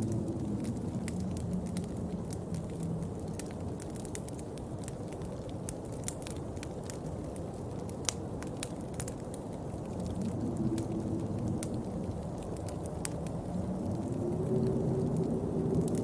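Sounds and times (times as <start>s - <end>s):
rain drops on hard surface: 0.0s - 16.0s.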